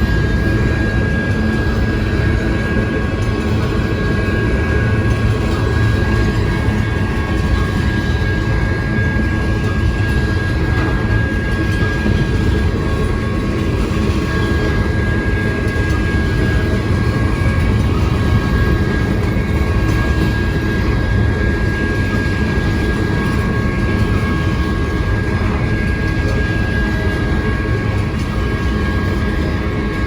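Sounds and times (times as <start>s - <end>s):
train wheels rumbling on track: 0.0s - 30.0s.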